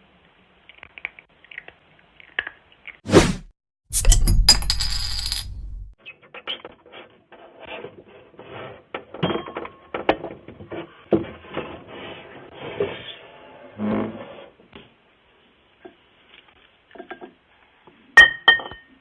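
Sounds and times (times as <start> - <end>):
loud metallic clatter: 3.1 - 6.0.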